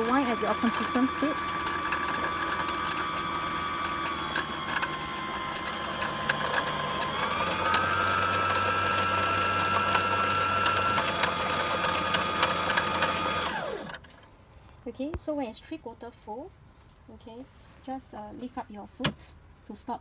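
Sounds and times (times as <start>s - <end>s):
sewing machine motor whine: 0.0s - 14.1s.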